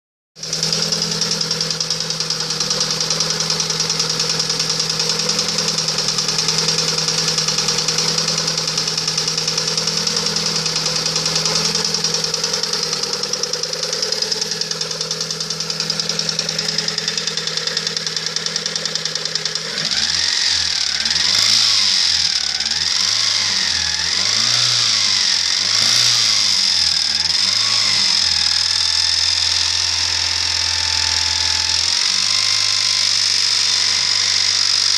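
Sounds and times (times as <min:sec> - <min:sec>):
car engine knocking: 0:00.4 - 0:21.6.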